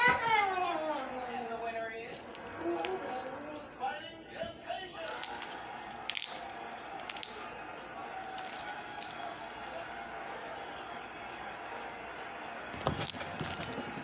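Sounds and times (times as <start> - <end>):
slime sticky clicks: 5.1 - 7.4.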